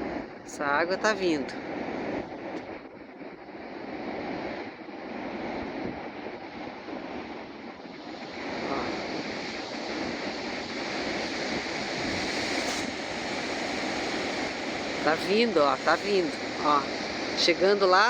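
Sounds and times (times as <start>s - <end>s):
sea surf breaking on beach: 0.0s - 18.0s
wind on microphone: 0.0s - 18.0s.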